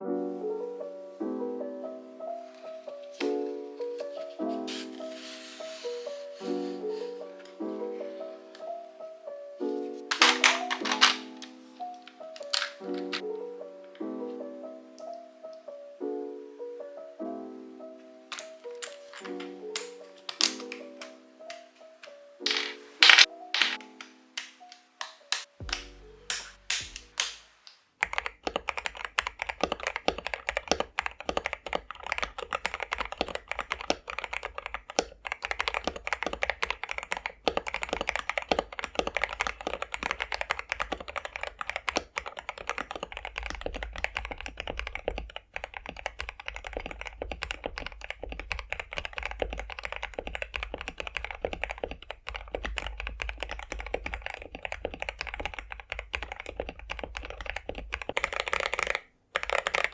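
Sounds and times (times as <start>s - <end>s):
mechanical keyboard typing: 10.1s - 13.2s, 18.3s - 21.6s, 22.5s - 23.8s, 28.0s - 59.9s.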